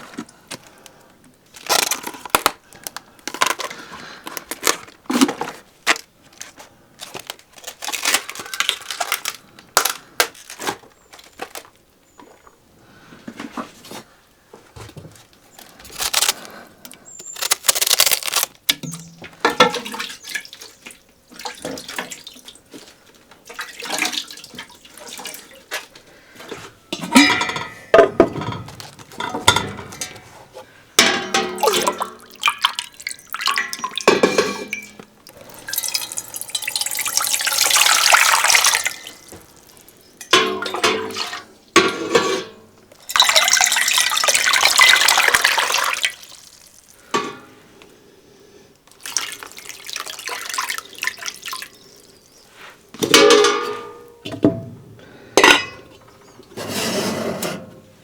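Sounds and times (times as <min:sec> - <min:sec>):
dishes and utensils clattering: 0:18.3 - 0:20.3, 0:26.5 - 0:30.4, 0:31.0 - 0:46.0, 0:47.1 - 0:47.6, 0:53.0 - 0:57.9
running splashing water: 0:19.6 - 0:25.8, 0:31.6 - 0:40.4, 0:43.1 - 0:47.1, 0:48.9 - 0:52.3.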